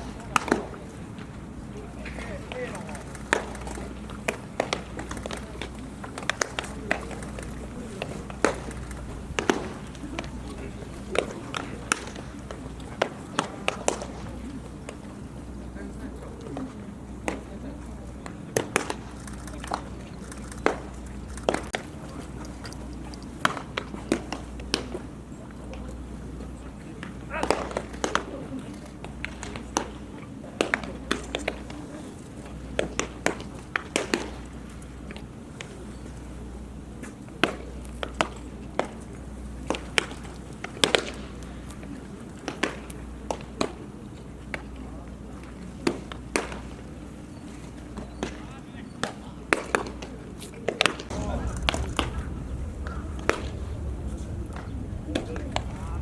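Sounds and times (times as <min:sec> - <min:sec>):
low steady rumble: 0:51.0 - 0:56.0.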